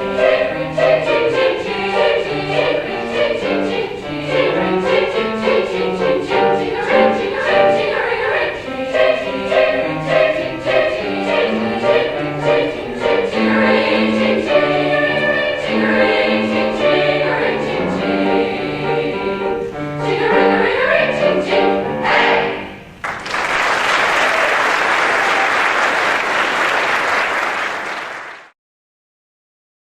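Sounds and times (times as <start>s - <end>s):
choir singing with accompaniment: 0.0s - 23.0s
audience applause: 23.0s - 28.5s.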